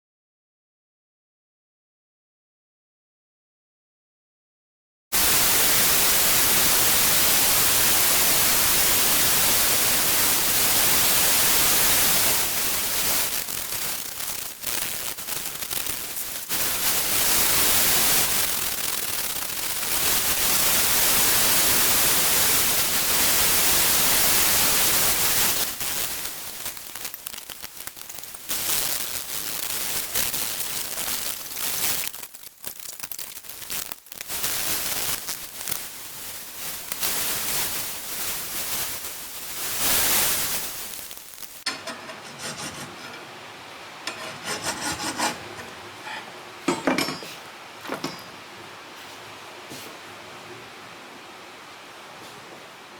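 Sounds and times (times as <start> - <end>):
grinding steel blade hiss: 41.5 - 43.4, 44.0 - 48.3
uneven scraping: 41.7 - 43.4, 44.1 - 48.2.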